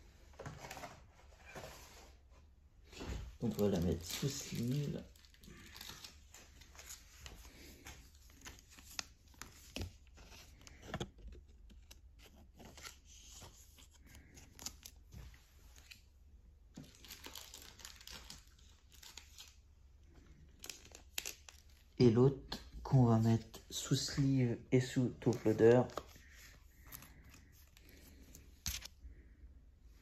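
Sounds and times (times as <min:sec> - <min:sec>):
plastic sleeve crinkling: 0:03.4 - 0:16.0, 0:16.7 - 0:22.1.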